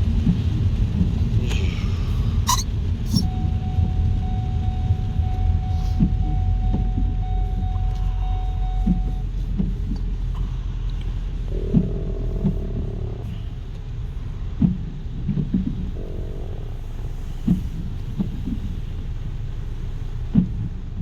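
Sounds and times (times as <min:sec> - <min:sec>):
car road and engine rumble: 0:00.0 - 0:21.0
faint steady tone: 0:03.2 - 0:09.5.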